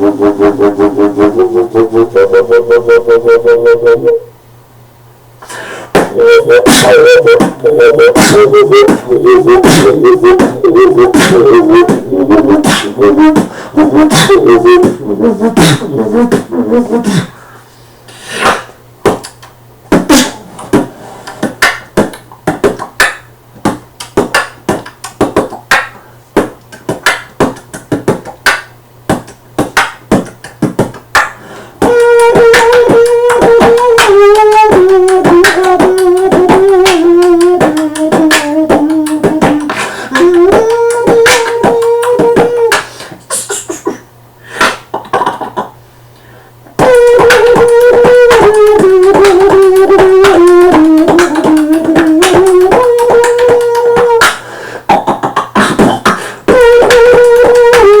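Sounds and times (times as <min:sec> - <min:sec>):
beatboxing: 0:00.0 - 0:04.3, 0:05.4 - 0:58.0
gliding pitched vocal sound: 0:00.0 - 0:04.3, 0:06.0 - 0:17.3, 0:31.8 - 0:44.0
hummed tone: 0:00.0 - 0:04.3, 0:06.0 - 0:17.3, 0:31.8 - 0:42.8, 0:46.8 - 0:54.4, 0:56.5 - 0:58.0.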